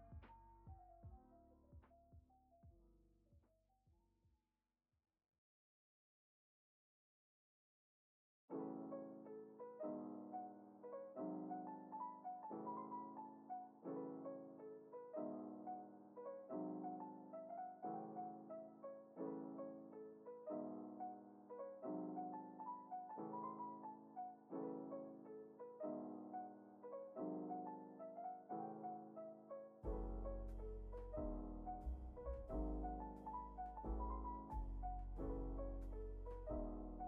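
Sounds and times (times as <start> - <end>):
soft piano piece: 8.5 - 37.0.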